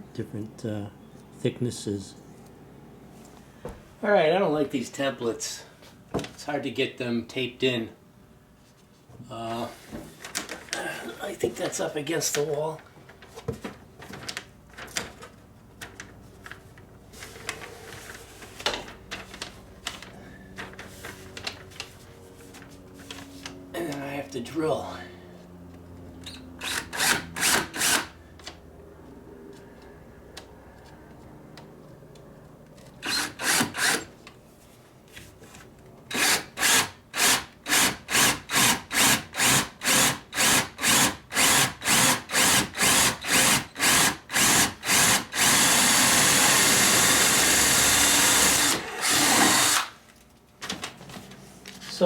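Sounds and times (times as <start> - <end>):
power drill drilling: 26.6 - 28.1, 33.0 - 34.1, 36.1 - 49.9.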